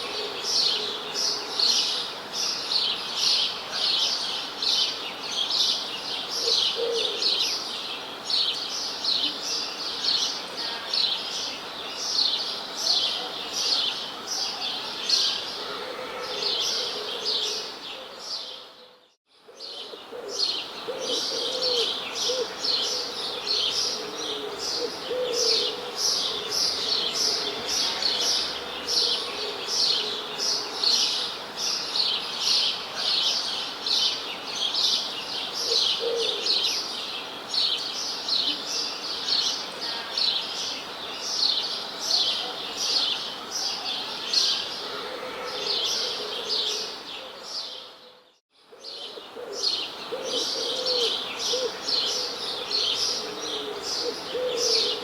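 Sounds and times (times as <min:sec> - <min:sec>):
birds chirping: 0:42.9 - 0:55.0.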